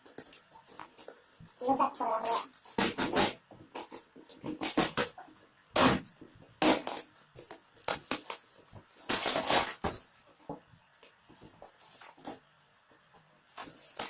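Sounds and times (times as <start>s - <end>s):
packaging crinkling and ripping: 6.6s - 10.0s, 13.6s - 14.0s.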